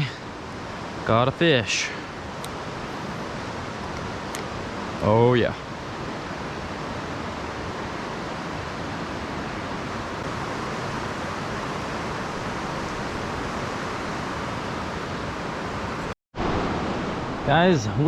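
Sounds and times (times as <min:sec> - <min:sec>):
creek water flowing over rocks: 0:01.8 - 0:16.0.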